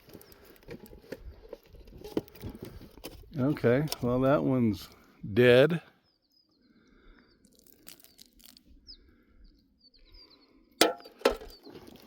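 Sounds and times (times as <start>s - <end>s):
bird chirps: 5.9s - 10.7s
beer cans clanking: 10.8s - 11.6s.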